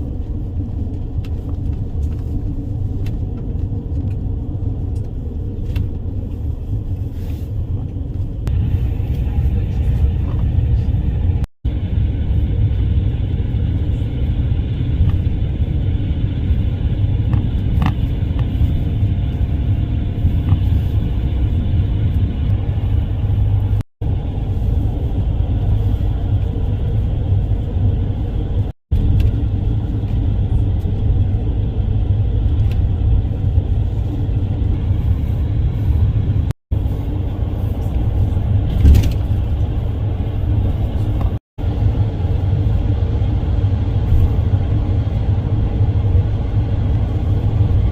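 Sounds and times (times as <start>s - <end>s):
road vehicle rumble: 0.0s - 47.9s.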